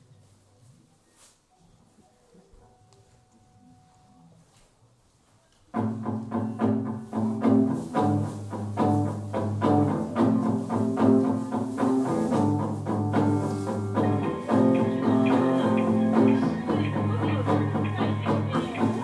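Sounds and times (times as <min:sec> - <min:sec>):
live band playing instrumental: 0:08.9 - 0:19.0.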